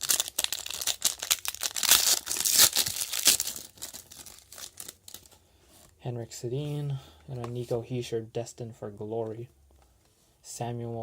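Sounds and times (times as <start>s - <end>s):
foil wrapper tearing and crinkling: 0.0s - 5.3s.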